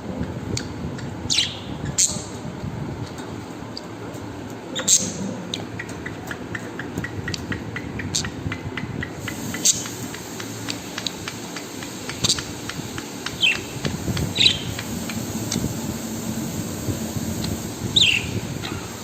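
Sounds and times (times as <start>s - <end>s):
pet bird chirping: 1.3s - 2.3s, 4.7s - 5.3s, 13.4s - 14.9s, 18.0s - 18.9s.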